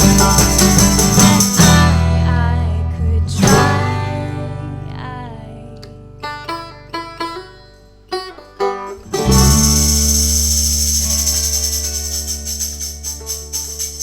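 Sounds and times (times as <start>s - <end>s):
deep bass: 0.0s - 6.2s, 9.0s - 14.0s
acoustic band playing: 0.0s - 14.0s
banjo plucked notes: 0.0s - 14.0s
shimmering high jingle: 9.3s - 14.0s.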